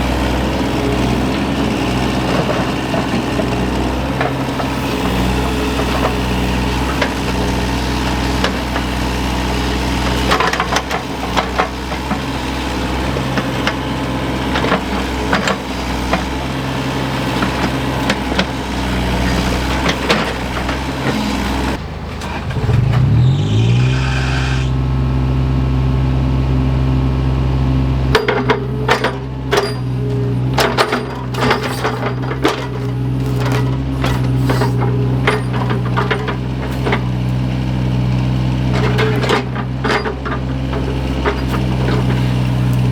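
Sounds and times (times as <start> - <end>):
diesel engine running: 0.0 - 42.9
excavator bucket knocking and clanking: 9.8 - 23.2, 28.1 - 42.9.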